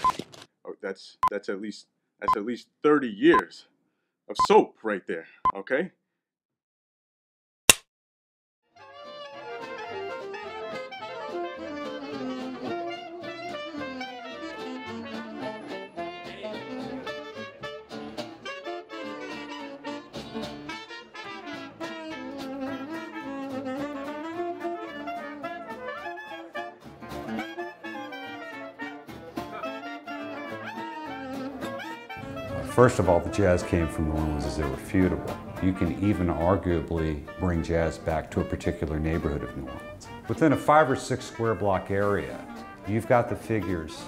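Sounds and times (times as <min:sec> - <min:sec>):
jazz horns over a beat: 0:08.8 - 0:44.0.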